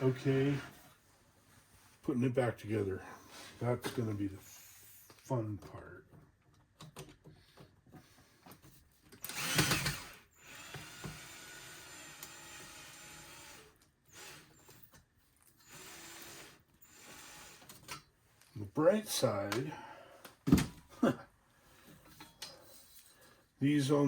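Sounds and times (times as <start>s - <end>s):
power drill whirring: 9.2s - 14.9s, 15.6s - 17.8s.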